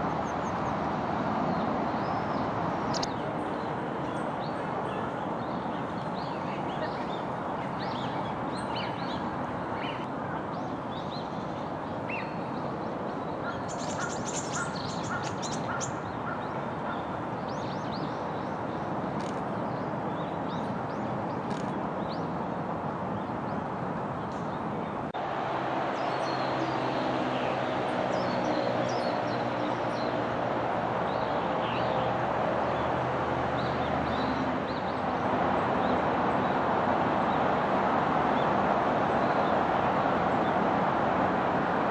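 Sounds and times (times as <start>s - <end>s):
birds chirping: 0.0s - 25.2s.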